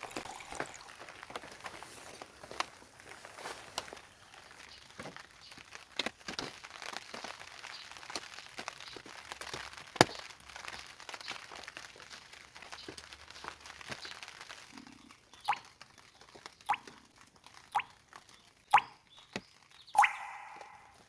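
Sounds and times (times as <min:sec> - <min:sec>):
dense crackling and pattering: 0:00.0 - 0:19.9
drops plopping into water: 0:20.0 - 0:21.0.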